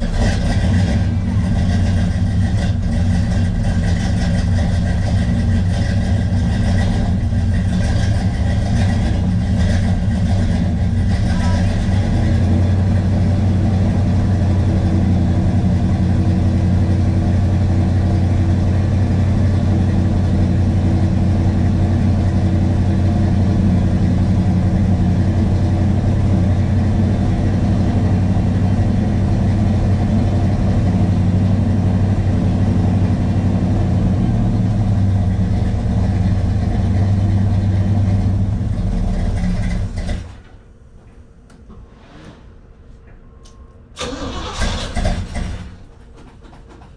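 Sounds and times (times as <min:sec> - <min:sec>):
car engine idling: 0:00.0 - 0:40.9, 0:44.0 - 0:46.9.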